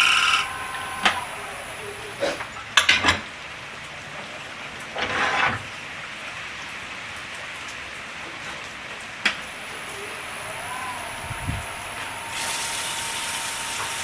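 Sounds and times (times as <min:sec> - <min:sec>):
rain hissing: 0:00.0 - 0:14.0
scraping rustle: 0:05.0 - 0:05.7.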